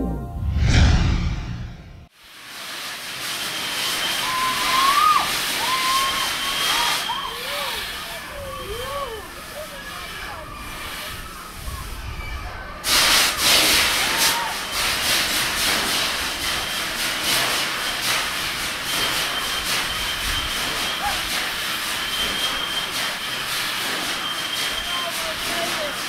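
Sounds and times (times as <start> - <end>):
crowd screaming on a ride: 3.4 - 15.1, 17.8 - 26.0.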